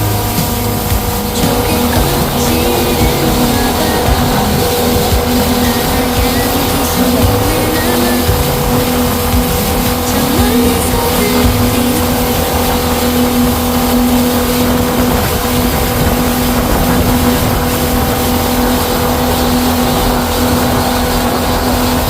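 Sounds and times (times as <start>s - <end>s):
motorboat engine humming: 0.0s - 22.0s
rush of wind and water: 0.0s - 22.0s.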